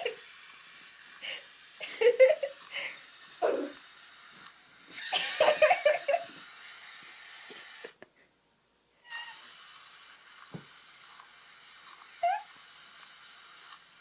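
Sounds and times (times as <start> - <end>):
steady background hiss: 0.0 - 14.0
people laughing and giggling: 5.2 - 6.3.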